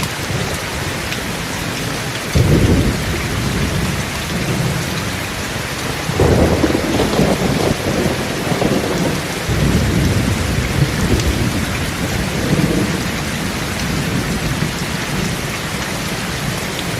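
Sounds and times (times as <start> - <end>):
steady rain: 0.0 - 16.9
thunder rumbling: 2.3 - 15.4.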